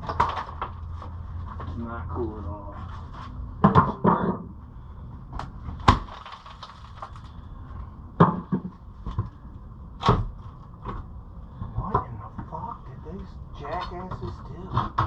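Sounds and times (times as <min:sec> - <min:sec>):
wood being pried off wall: 0:05.4 - 0:07.3, 0:10.0 - 0:11.0.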